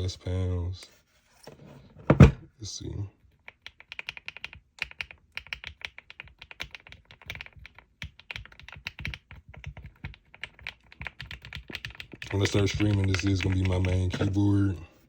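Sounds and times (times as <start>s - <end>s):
mechanical keyboard key clacks: 3.4s - 14.3s.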